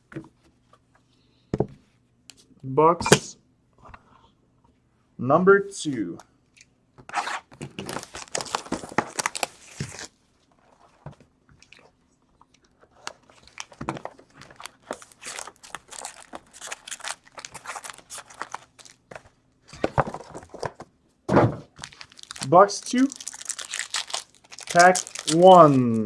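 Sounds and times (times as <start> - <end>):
wrapping crinkling and tearing: 7.8 - 10.8, 12.5 - 19.3, 21.7 - 26.0.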